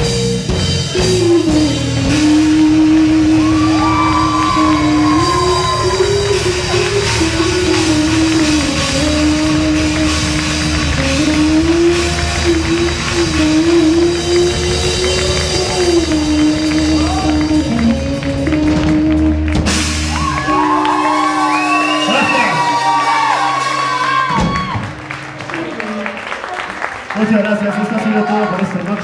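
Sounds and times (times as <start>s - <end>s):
drums and cymbals: 0.0s - 24.9s
rock band playing: 0.0s - 27.1s.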